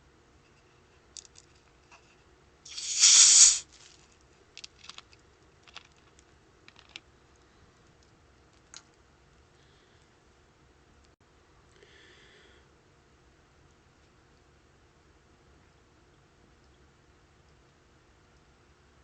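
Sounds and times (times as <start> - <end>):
soda can hiss: 2.7 - 3.9.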